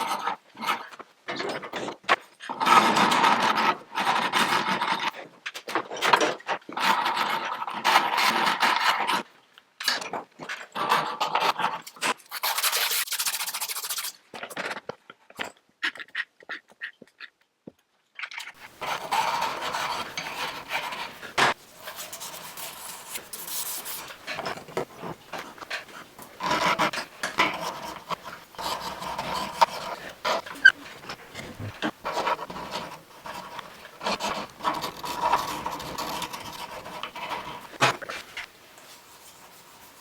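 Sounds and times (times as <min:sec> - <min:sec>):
hand-sanding steel blade: 0:12.2 - 0:14.2, 0:18.6 - 0:38.3.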